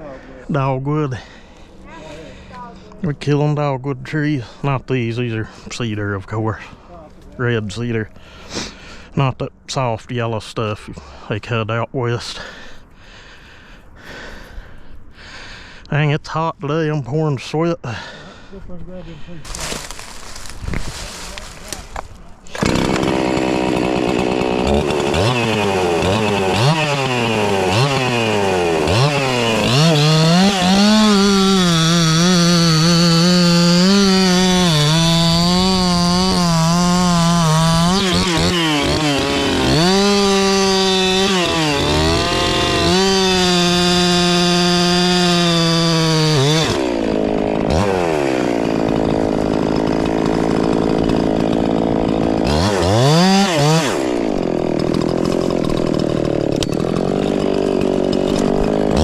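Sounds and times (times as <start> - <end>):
chainsaw cutting wood: 19.4 - 59.0.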